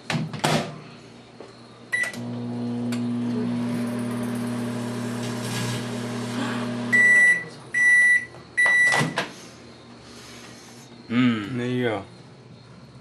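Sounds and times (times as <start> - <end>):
microwave oven humming: 1.9 - 9.2.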